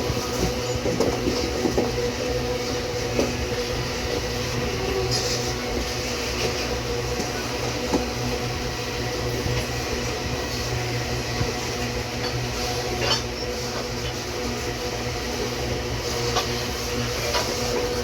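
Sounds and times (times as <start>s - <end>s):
diesel locomotive hum: 0.0s - 18.0s.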